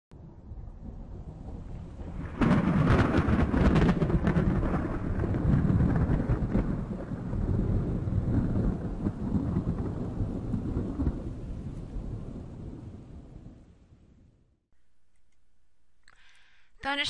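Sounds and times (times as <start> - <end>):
thunder rumbling and clapping: 0.1 - 13.7.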